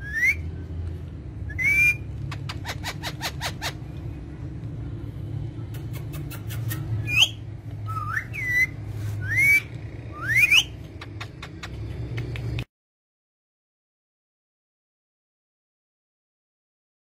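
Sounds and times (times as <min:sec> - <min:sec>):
parrot rising whistles: 0:00.0 - 0:00.4, 0:01.5 - 0:02.1, 0:07.0 - 0:10.7
parrot clicking: 0:10.8 - 0:12.7.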